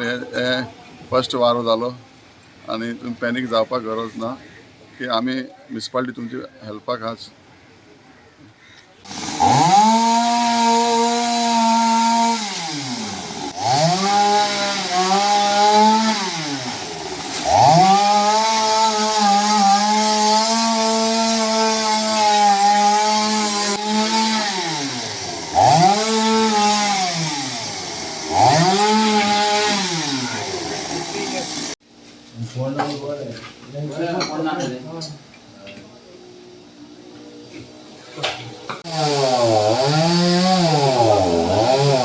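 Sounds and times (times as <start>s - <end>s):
chainsaw cutting wood: 9.1s - 31.8s, 38.7s - 42.0s.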